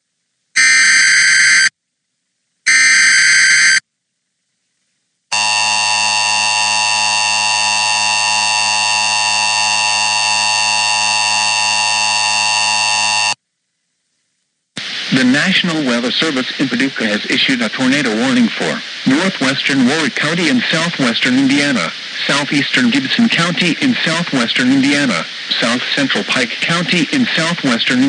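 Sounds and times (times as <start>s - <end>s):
steady attention tone: 14.8s - 28.0s.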